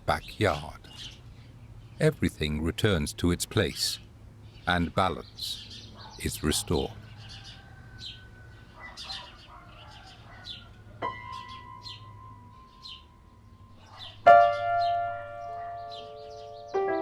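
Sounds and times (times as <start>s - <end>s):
small birds chirping: 0.0s - 17.0s
loud piano chord: 14.2s - 17.0s.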